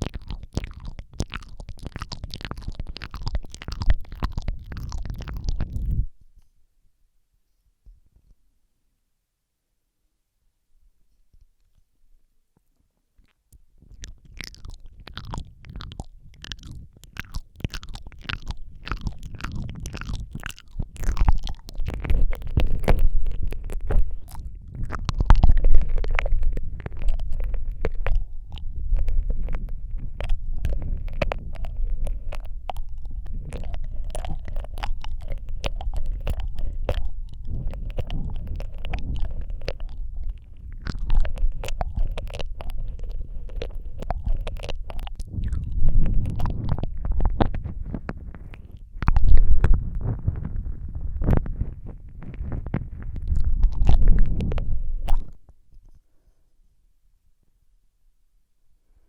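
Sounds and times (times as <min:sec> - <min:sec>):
wet lip smacks: 0:00.0 - 0:06.1, 0:13.2 - 0:56.0
tongue clicks: 0:00.0 - 0:06.5, 0:12.6 - 0:56.2
low microphone rumble: 0:13.8 - 0:55.7.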